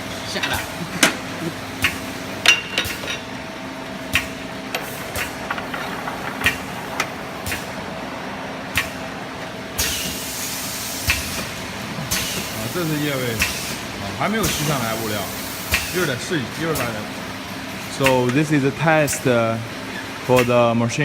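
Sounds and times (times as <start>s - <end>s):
machine humming: 0.0s - 17.8s
machine parts clicking and knocking: 4.7s - 7.6s
machine hiss: 9.8s - 20.5s.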